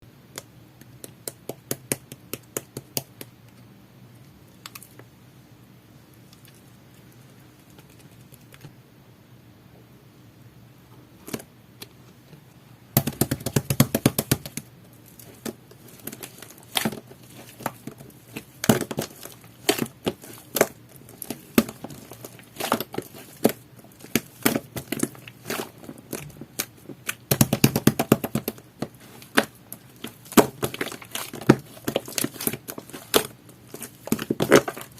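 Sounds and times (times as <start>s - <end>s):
slime popping and crackling: 13.0s - 34.9s.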